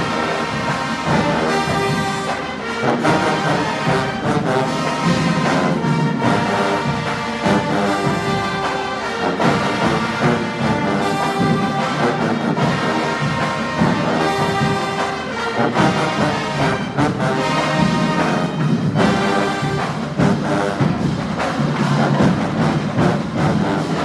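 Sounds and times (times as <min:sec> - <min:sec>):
marching band playing: 0:00.0 - 0:24.0.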